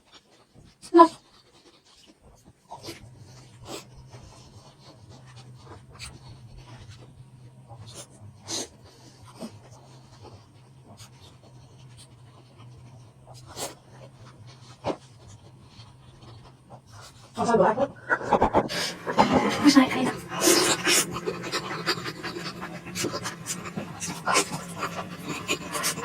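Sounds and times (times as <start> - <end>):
low steady hum: 2.7 - 26.0
wet mouth chewing clicks: 18.0 - 26.0.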